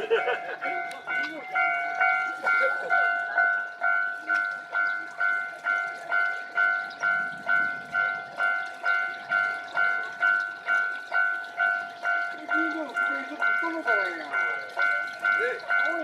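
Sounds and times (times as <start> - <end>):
level crossing bell ringing: 0.0 - 16.0.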